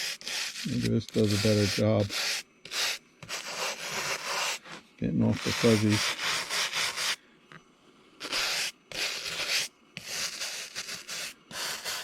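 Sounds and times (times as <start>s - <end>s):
wire brush scrubbing plastic: 0.0s - 7.2s.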